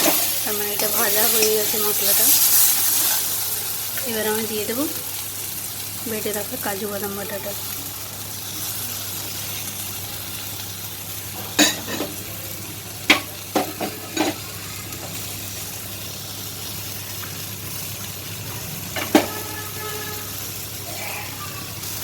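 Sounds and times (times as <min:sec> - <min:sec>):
metal spoon clinking against pan: 0:00.0 - 0:02.2
spices sizzling in oil: 0:00.0 - 0:22.0.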